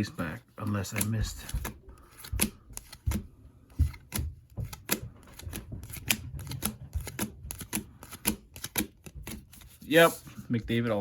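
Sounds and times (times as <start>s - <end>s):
cards flipped snapping: 3.8s - 9.7s.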